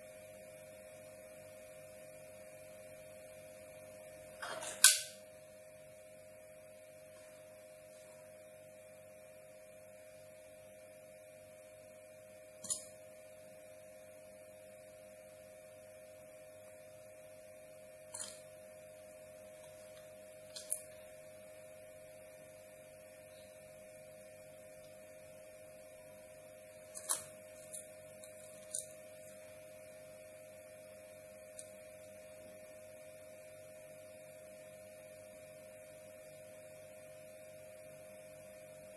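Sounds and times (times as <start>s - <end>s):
faint electrical hum: 0.0s - 38.9s
small sharp clicks and taps: 27.0s - 29.4s.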